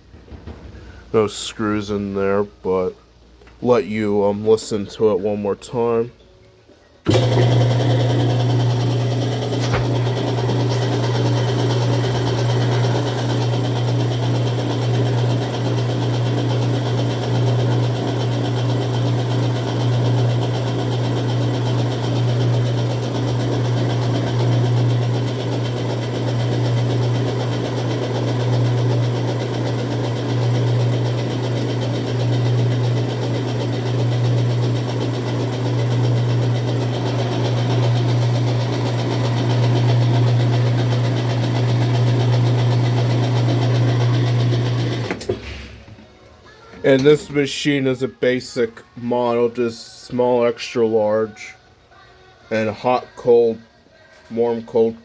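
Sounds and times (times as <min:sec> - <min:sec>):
washing machine spinning: 0:07.1 - 0:46.0.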